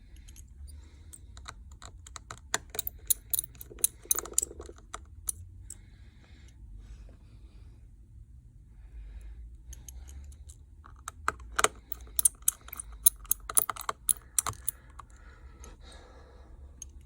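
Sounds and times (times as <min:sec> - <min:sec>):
small tools clicking on metal: 0:00.1 - 0:05.8, 0:09.7 - 0:15.1.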